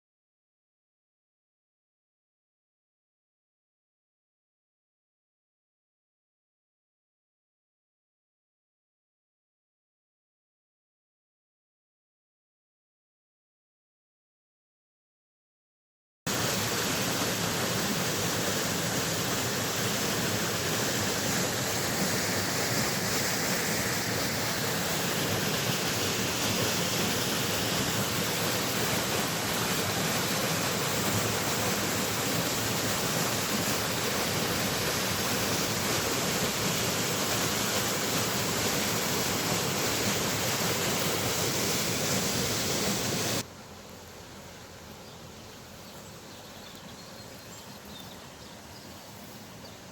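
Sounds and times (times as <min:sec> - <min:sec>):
river water rushing: 0:16.3 - 0:49.9.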